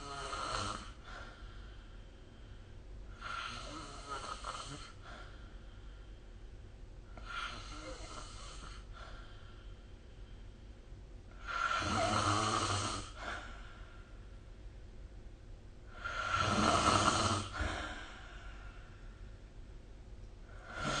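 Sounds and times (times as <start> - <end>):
person snoring: 0.0 - 1.0, 3.2 - 5.0, 7.2 - 8.9, 11.4 - 13.2, 15.9 - 18.3, 20.5 - 21.0
quiet breathing: 0.0 - 15.0, 15.8 - 21.0.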